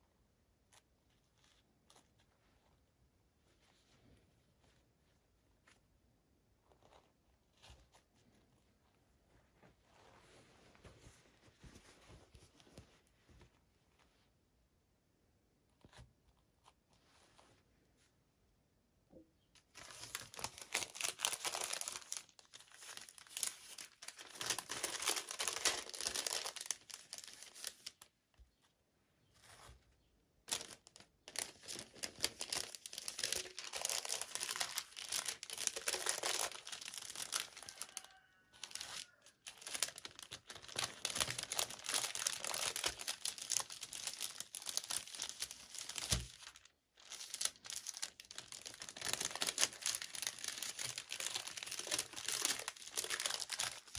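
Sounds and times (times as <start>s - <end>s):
toy packaging crinkling and tearing: 19.7s - 28.0s, 30.5s - 53.9s.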